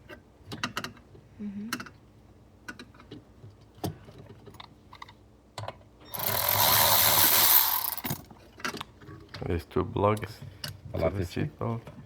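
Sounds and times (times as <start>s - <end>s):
loud scraping rattle: 6.1s - 8.2s.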